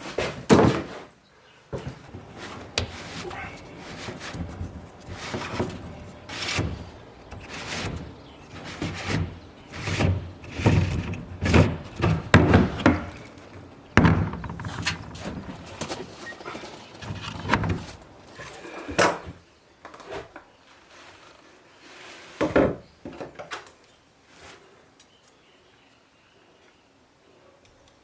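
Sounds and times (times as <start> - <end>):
loud thuds: 1.8 - 16.2
timber and tools knocking: 1.8 - 19.3.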